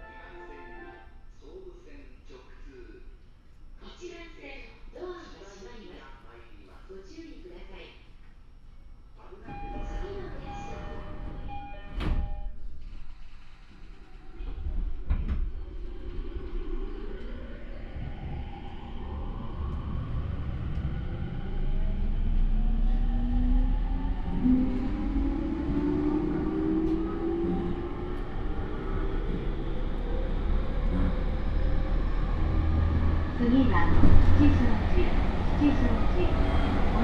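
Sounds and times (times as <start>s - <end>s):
low train rumbling: 9.2s - 37.0s.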